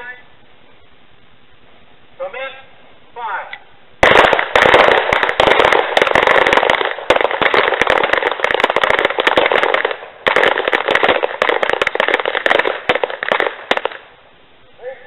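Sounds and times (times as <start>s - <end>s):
rapid pistol shots: 4.0s - 14.1s.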